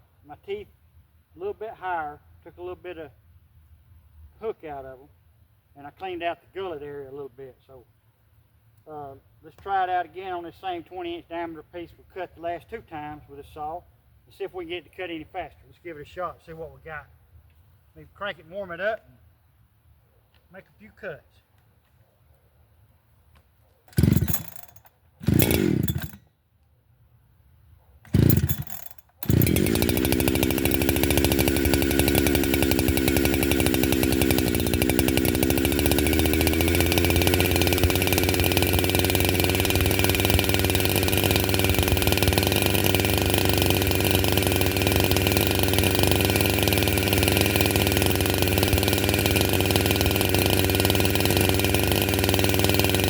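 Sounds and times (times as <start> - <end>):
chainsaw pull-start: 23.9 - 26.3, 28.0 - 53.0
chainsaw running: 23.9 - 26.3, 28.0 - 53.0.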